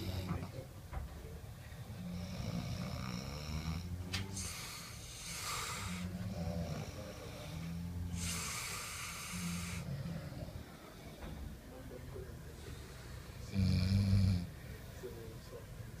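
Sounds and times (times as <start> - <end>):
person snoring: 2.0 - 11.1, 12.6 - 14.5.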